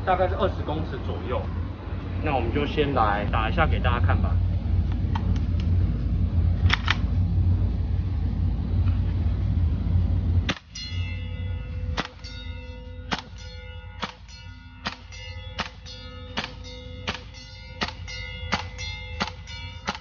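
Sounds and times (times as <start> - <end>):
loud low rumble: 0.0 - 20.0
metal target clanging: 10.5 - 20.0
airsoft rifle shots: 12.0 - 12.2, 13.1 - 13.4, 14.0 - 20.0.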